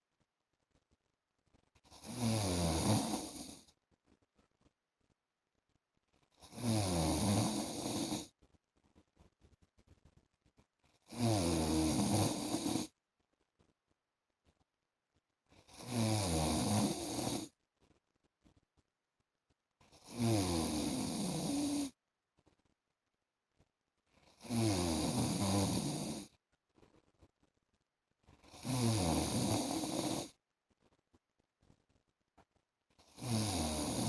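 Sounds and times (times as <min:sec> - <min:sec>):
man snoring: 0:01.9 - 0:03.6, 0:06.4 - 0:08.3, 0:11.1 - 0:12.9, 0:15.7 - 0:17.5, 0:19.9 - 0:22.0, 0:24.4 - 0:26.3, 0:28.5 - 0:30.4, 0:33.0 - 0:34.0.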